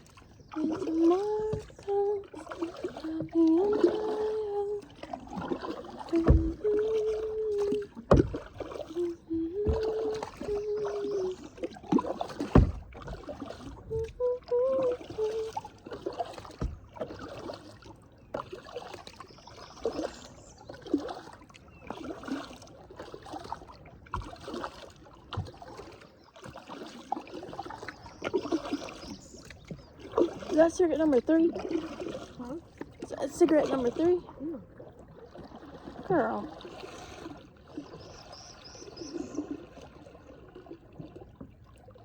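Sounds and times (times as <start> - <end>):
paddle knocking on hull: 0.0 - 41.8
paddle dipping and dripping water: 0.0 - 42.0
held low notes: 6.1 - 11.5, 13.8 - 15.6.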